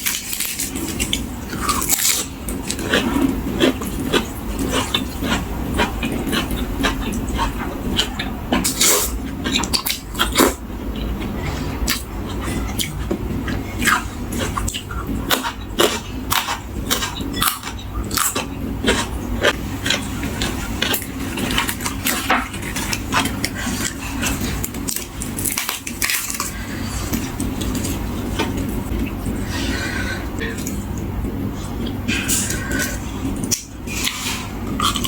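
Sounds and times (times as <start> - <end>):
crisp vegetables crunching: 0.0 - 10.6, 13.8 - 28.0
steady low hum: 0.0 - 35.0.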